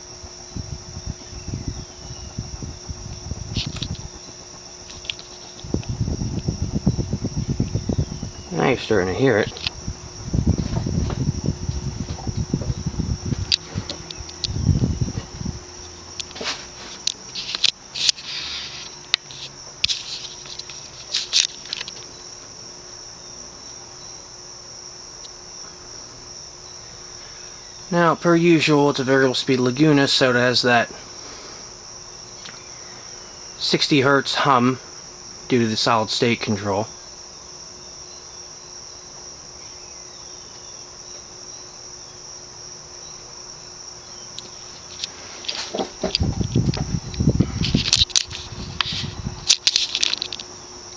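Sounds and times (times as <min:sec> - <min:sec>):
high-pitched whine: 0:00.0 - 0:21.1
ceiling fan motor hum: 0:00.0 - 0:50.9
sharp clicks: 0:44.4 - 0:50.6.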